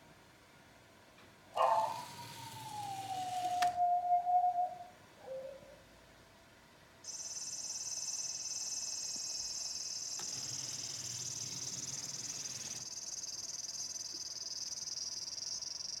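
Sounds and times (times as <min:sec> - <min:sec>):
click: 0:03.4 - 0:03.8
crickets chirring: 0:07.1 - 0:16.0.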